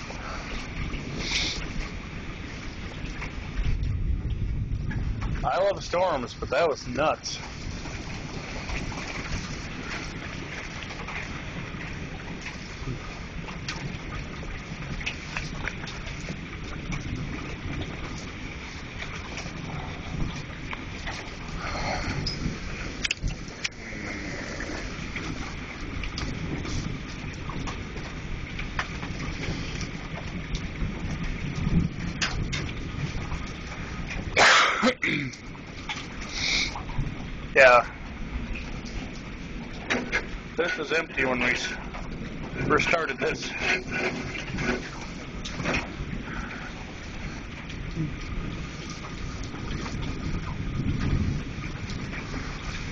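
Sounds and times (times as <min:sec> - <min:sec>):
rain hiss: 0:00.0 - 0:02.8, 0:05.8 - 0:13.4, 0:21.4 - 0:27.2, 0:36.2 - 0:43.8, 0:44.5 - 0:50.0
low thunder rumble: 0:00.0 - 0:34.6, 0:36.8 - 0:52.9
wind: 0:00.0 - 0:52.9
heavy rain hissing: 0:00.2 - 0:01.7, 0:23.6 - 0:25.1, 0:36.3 - 0:36.8.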